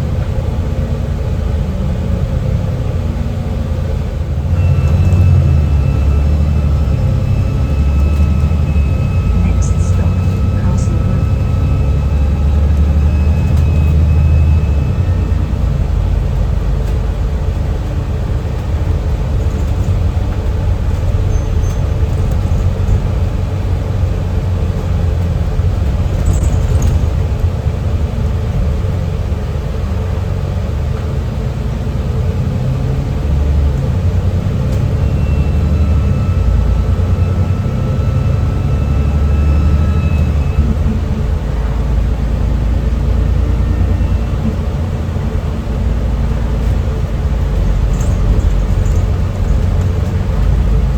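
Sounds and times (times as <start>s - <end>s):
bus diesel engine rumbling: 0.0s - 50.9s
high turbo whistle: 4.5s - 15.8s.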